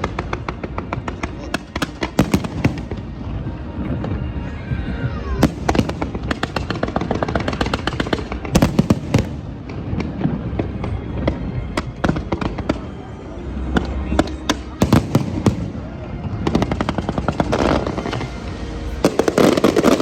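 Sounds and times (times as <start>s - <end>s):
fireworks cracking and banging: 0.0s - 4.3s, 5.3s - 13.0s, 13.7s - 20.0s.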